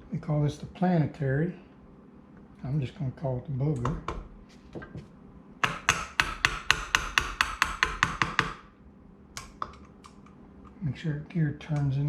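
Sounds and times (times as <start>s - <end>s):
sharp metallic taps: 5.6s - 8.6s.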